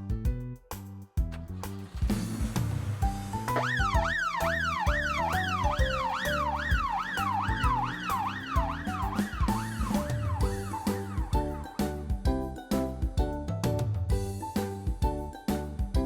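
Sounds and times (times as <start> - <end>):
upbeat children's music: 0.0 - 16.0
siren yelping: 3.5 - 12.0.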